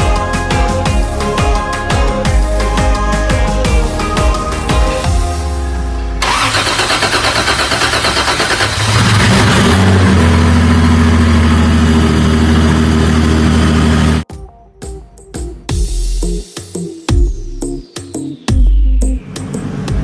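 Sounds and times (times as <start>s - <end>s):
car engine cranking and starting: 5.9s - 14.2s
car engine idling: 5.9s - 14.2s.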